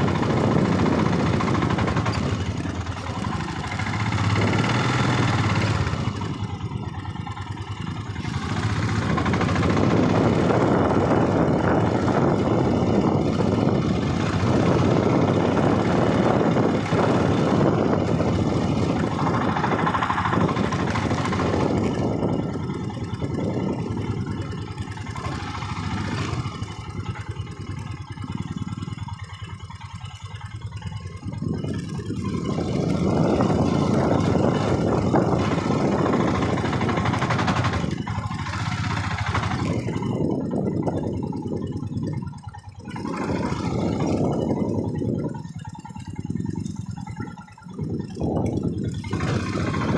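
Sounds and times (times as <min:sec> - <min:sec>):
motorbike engine running: 0:00.0 - 0:49.9
wind noise rushing: 0:08.2 - 0:27.1, 0:31.3 - 0:41.2.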